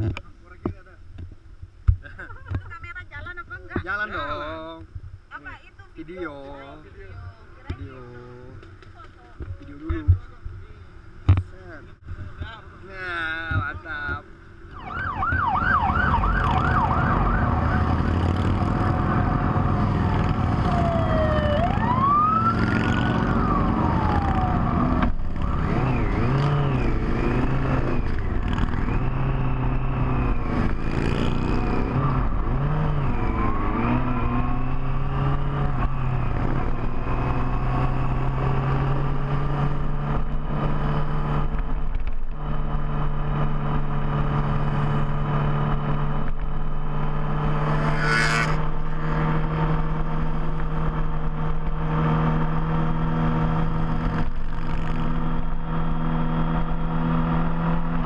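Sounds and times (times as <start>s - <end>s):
motorcycle engines running: 0.0s - 58.0s
electronic siren yelping and wailing: 14.7s - 36.4s.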